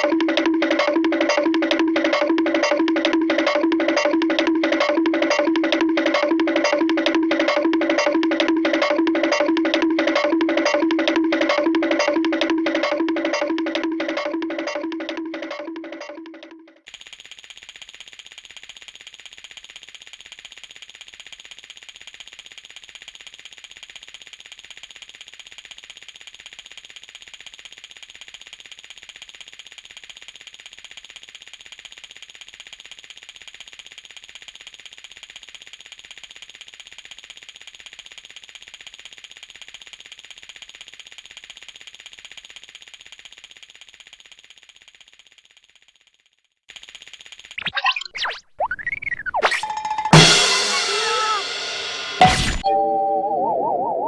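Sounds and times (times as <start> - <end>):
electric alarm ringing: 48.0 - 54.0.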